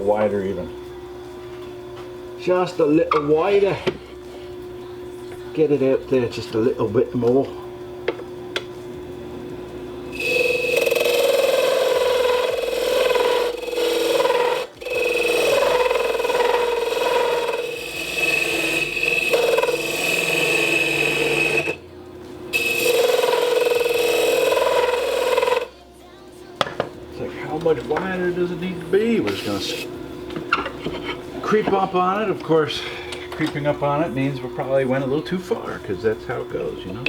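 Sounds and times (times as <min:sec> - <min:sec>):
wood lathe running: 0:05.4 - 0:08.2, 0:10.1 - 0:25.7, 0:27.1 - 0:37.0
turning tool cutting wood: 0:10.1 - 0:21.9, 0:22.5 - 0:25.8, 0:27.2 - 0:37.0.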